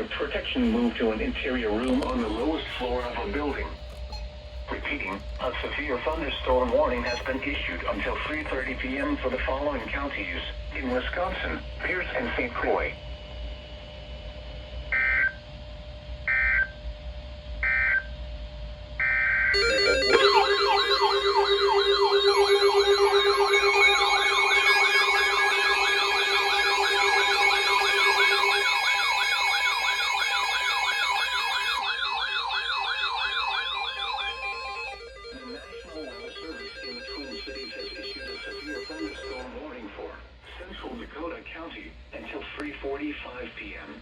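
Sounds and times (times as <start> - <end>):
short beeping data bursts: 3.9 - 4.4, 6.9 - 7.5, 19.6 - 39.4
warbling alert tone: 6.4 - 8.2, 19.6 - 39.5.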